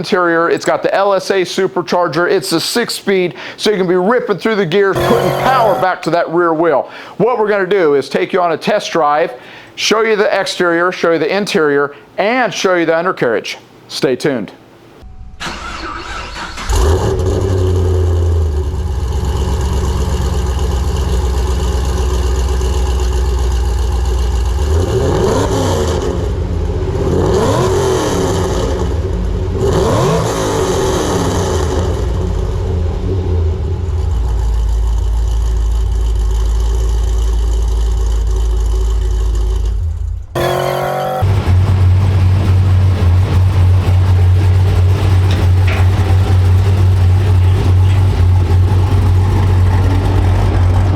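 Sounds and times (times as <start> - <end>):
car engine droning and revving: 5.0 - 5.9, 16.6 - 50.9.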